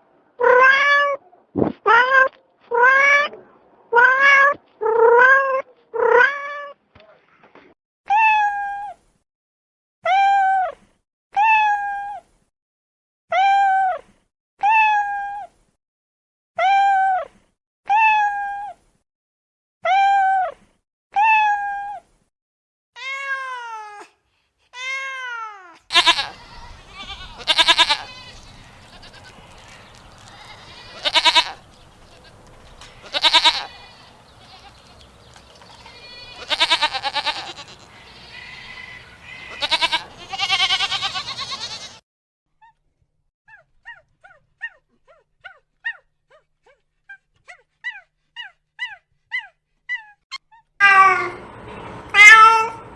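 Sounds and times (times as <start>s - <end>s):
meow-like calls: 0.4s - 1.2s, 1.9s - 6.8s, 25.9s - 31.6s, 32.9s - 35.0s, 35.8s - 42.0s, 50.8s - 51.4s, 52.1s - 52.8s
goats bleating: 25.9s - 42.0s.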